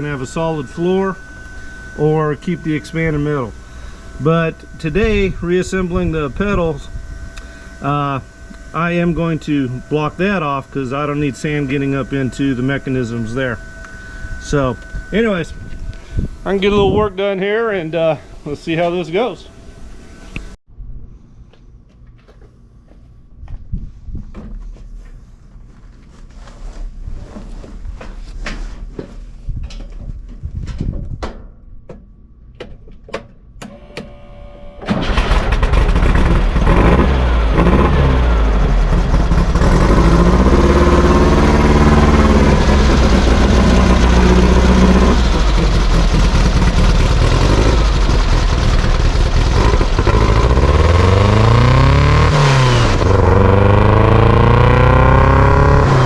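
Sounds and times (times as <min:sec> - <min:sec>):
buggy engine revving: 0:34.9 - 0:56.0.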